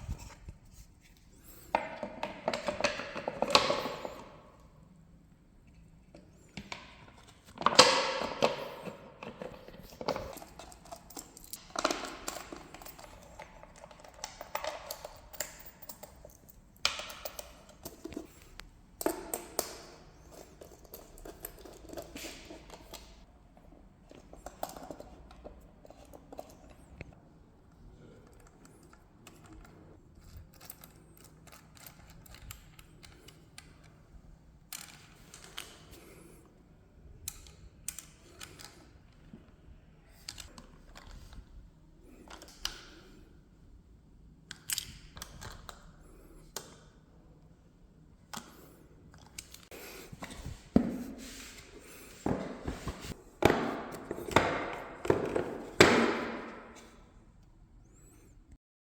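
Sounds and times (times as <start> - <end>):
chair parts clicking and knocking: 1.7 - 4.4, 49.2 - 57.0.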